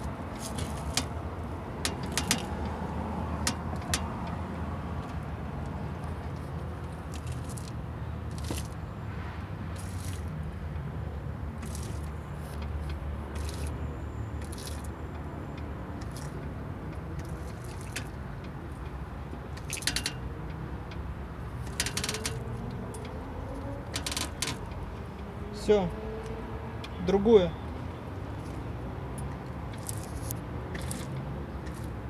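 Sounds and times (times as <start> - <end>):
car suspension squeaking: 0.0 - 2.7, 19.4 - 25.7.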